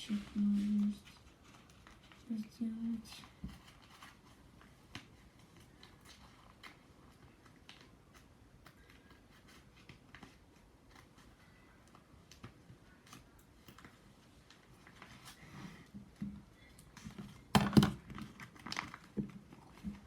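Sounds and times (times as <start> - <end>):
paper handling: 0.3 - 15.5.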